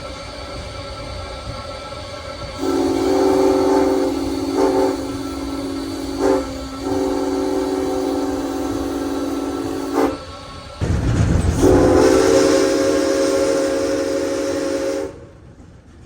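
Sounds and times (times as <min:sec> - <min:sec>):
steam whistle chord: 0:02.6 - 0:10.3, 0:11.6 - 0:15.3.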